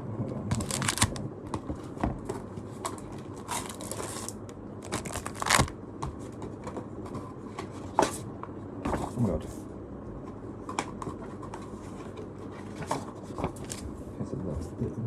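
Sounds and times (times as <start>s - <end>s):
crinkling rustle: 0.5s - 1.2s, 1.8s - 5.8s.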